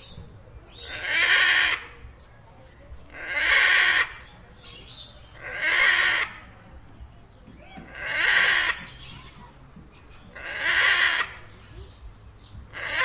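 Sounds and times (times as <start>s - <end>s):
macaw squawking: 0.8s - 1.9s, 3.1s - 4.3s, 5.4s - 6.4s, 7.8s - 9.3s, 10.3s - 11.5s, 12.7s - 13.0s.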